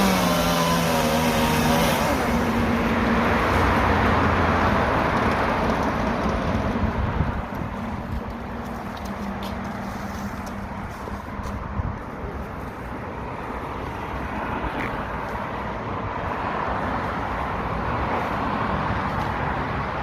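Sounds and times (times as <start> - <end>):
chainsaw engine running: 0.0 - 2.9.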